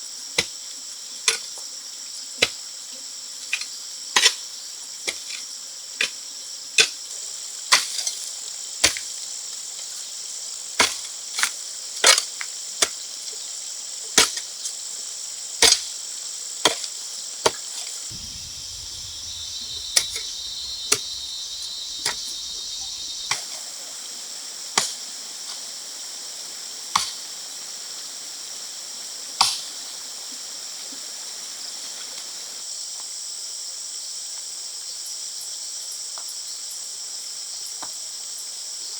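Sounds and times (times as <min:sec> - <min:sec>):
insects chirring: 0:18.1 - 0:23.4
sharp knocks: 0:18.1 - 0:23.4.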